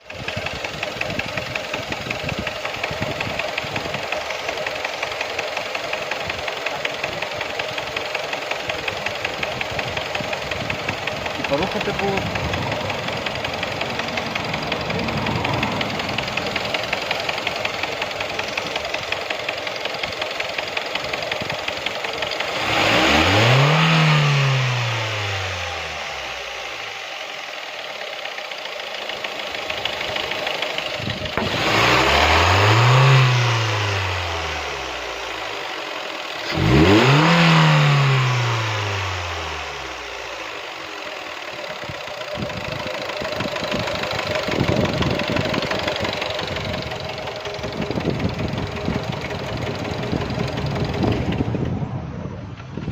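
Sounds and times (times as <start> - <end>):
engine idling with knocking: 0.0 - 52.9
engine revving: 0.0 - 52.9.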